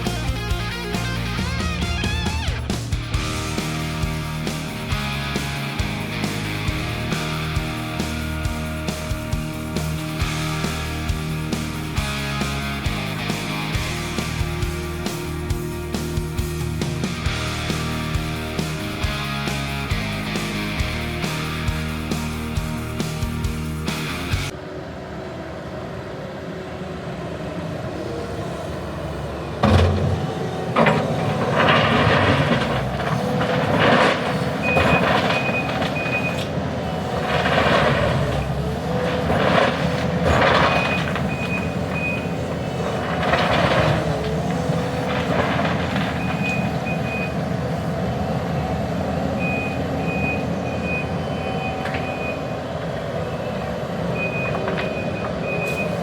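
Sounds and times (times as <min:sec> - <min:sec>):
mulcher noise surges: 0:00.0 - 0:52.8
engine drone: 0:00.0 - 0:56.0
reversing alarm beeping: 0:34.5 - 0:37.0, 0:40.4 - 0:42.9, 0:46.0 - 0:47.7, 0:49.3 - 0:56.0.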